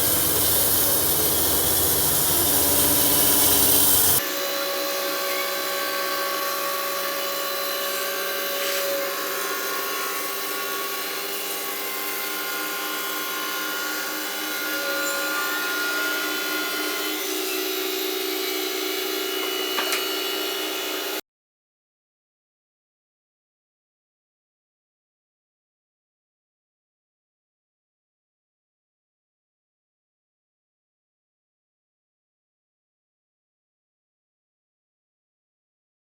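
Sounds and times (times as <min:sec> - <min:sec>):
sawmill whine cutting log: 0:00.0 - 0:21.2.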